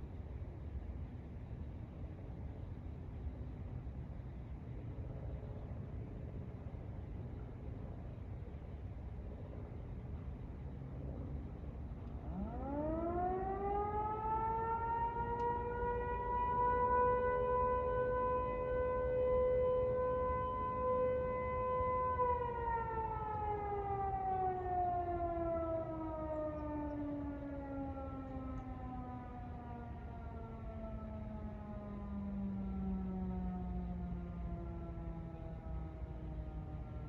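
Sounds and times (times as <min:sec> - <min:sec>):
civil defense siren: 0:00.0 - 0:37.0.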